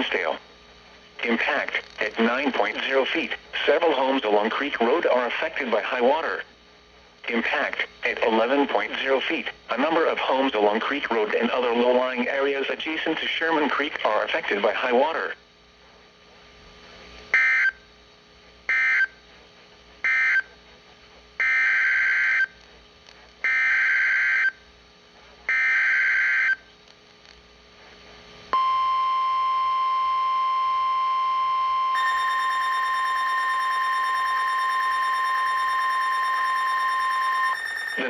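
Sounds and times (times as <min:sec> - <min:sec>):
warning alarm tone: 0:28.6 - 0:38.0
higher alarm tone: 0:31.9 - 0:38.0.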